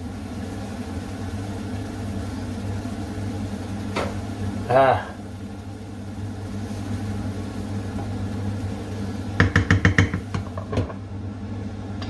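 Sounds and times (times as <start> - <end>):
low kitchen hum: 0.0 - 12.0
utensil knocking against a pan: 9.4 - 11.0.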